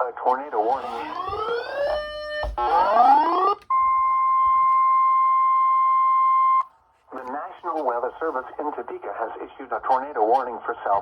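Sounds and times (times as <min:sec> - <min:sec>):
steady attention tone: 0:00.3 - 0:06.6.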